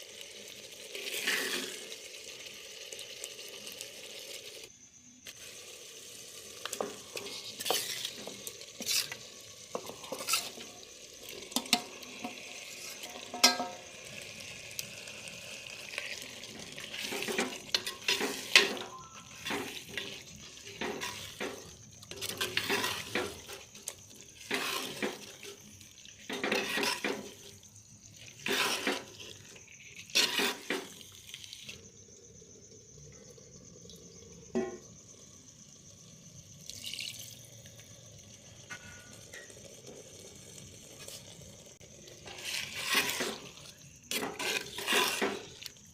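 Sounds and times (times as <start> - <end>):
chicken sizzling: 0.0 - 45.9
spatula scraping a clay pot: 7.1 - 9.2, 9.8 - 10.7, 16.8 - 23.7, 24.4 - 25.4, 26.2 - 27.4, 28.3 - 30.9, 42.2 - 45.7.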